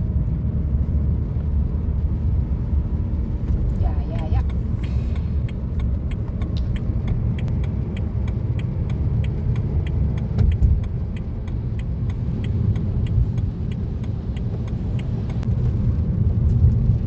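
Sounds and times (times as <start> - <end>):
car road noise rumble: 0.0 - 17.0
small light ticks: 4.4 - 15.5.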